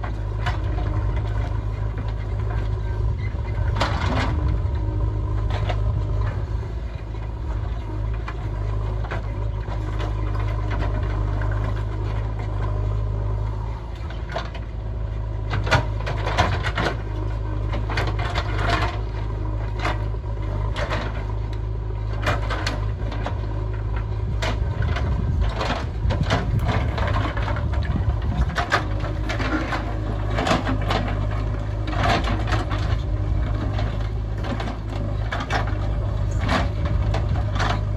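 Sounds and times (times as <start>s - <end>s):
diesel engine running: 0.0s - 37.9s
digging knocks and clatters: 15.4s - 37.9s.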